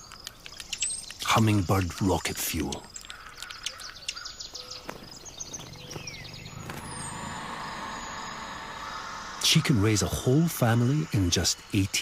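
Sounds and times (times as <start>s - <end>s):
small birds chirping: 0.0s - 12.0s
steady background hum: 5.6s - 12.0s.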